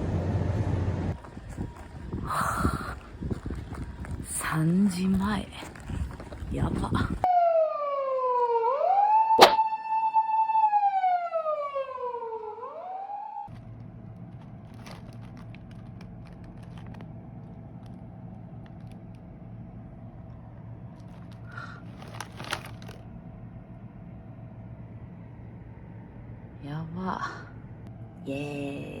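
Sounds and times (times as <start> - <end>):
steady low hum: 0.0 - 7.3, 13.5 - 29.0
siren-like wailing tone: 7.3 - 13.5.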